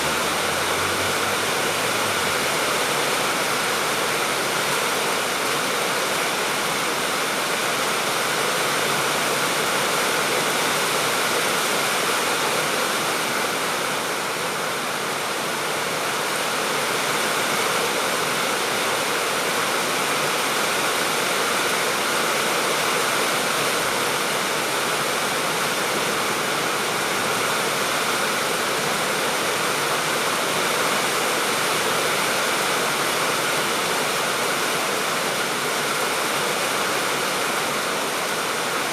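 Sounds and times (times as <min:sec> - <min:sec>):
steady rainfall hiss: 0:00.0 - 0:38.9.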